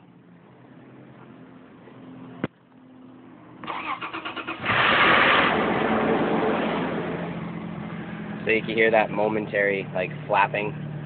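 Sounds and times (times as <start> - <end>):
car engine running loudly: 4.6 - 11.0.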